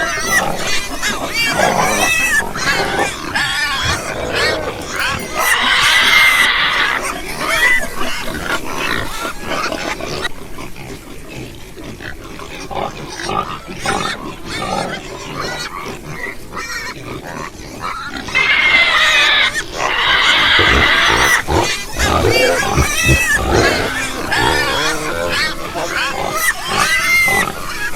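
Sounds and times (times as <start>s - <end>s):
pigs grunting: 0.0s - 27.9s
pigs squealing: 0.0s - 27.9s.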